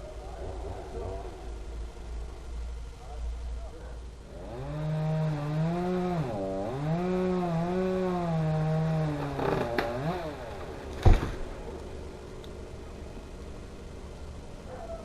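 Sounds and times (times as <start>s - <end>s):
chainsaw running at high revs: 4.2s - 10.9s
loud thump: 11.0s - 11.5s.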